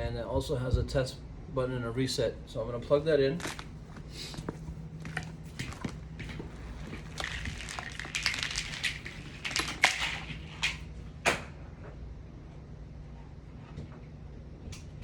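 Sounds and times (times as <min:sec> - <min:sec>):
power cord rustling: 0:03.4 - 0:10.9.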